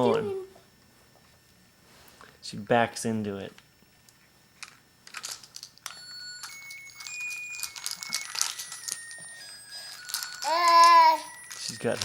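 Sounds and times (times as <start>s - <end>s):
plastic toy clicks and rattling: 4.6s - 12.0s.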